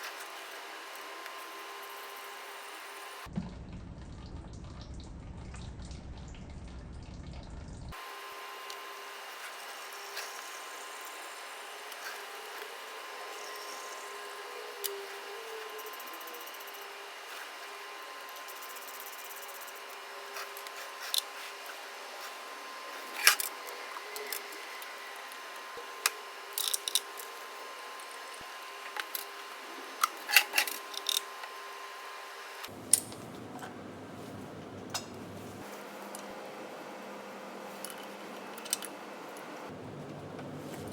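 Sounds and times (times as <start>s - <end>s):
steady hum: 0.0s - 40.9s
tools and parts clicking: 23.1s - 23.5s, 26.0s - 27.3s, 30.0s - 31.3s, 37.8s - 38.9s.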